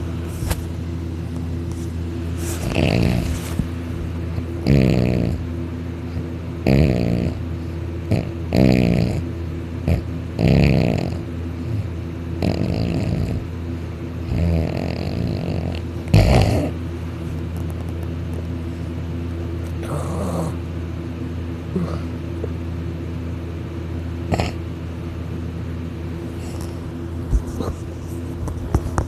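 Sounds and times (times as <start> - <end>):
steady low hum: 0.0 - 29.0
man snoring loudly: 2.7 - 3.3, 4.6 - 5.4, 6.6 - 7.4, 8.1 - 9.2, 9.9 - 11.2, 12.4 - 13.4, 14.3 - 16.8, 19.8 - 20.6.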